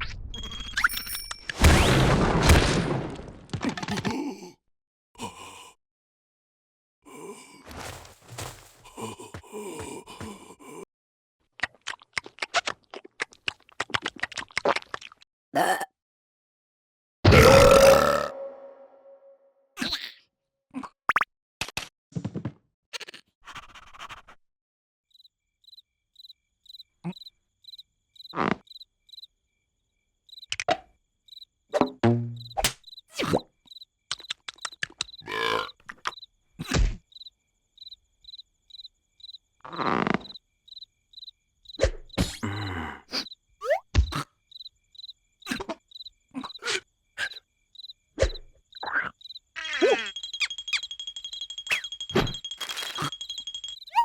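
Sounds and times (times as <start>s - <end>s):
cricket chirping: 7.8s - 9.3s, 25.1s - 31.7s, 32.3s - 54.0s
cartoon knocks and plops: 31.8s - 32.8s
cartoon sound effects: 32.0s - 32.7s, 49.6s - 50.3s
cartoon character noises: 48.8s - 50.2s
wavering pitched cry: 49.6s - 52.0s.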